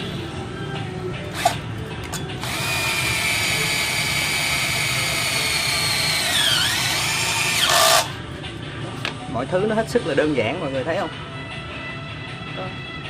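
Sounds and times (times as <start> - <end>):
cordless drill motor whining: 1.3 - 8.2.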